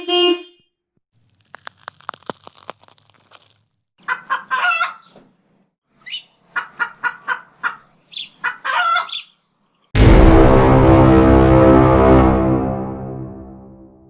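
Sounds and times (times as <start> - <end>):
chicken clucking: 4.0 - 5.2, 6.1 - 9.3.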